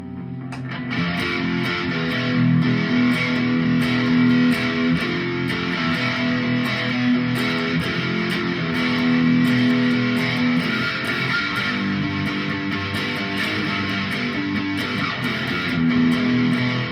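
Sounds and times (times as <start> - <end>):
electric guitar strumming chords: 0.0 - 16.9.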